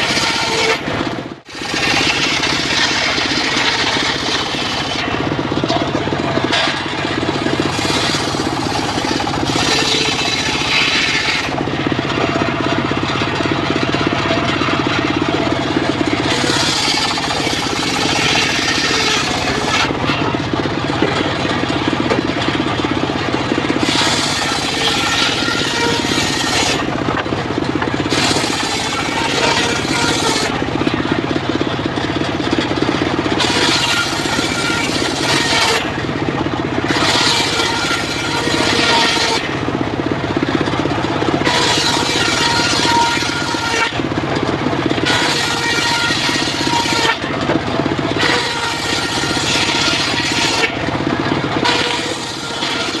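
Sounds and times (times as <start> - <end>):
saw blade ripping through wood: 0.0 - 21.4, 23.7 - 27.2, 27.8 - 31.1, 33.4 - 36.0, 36.8 - 39.6, 41.4 - 44.0, 45.0 - 47.3, 48.1 - 50.8, 51.6 - 53.0
engine drone: 0.0 - 53.0.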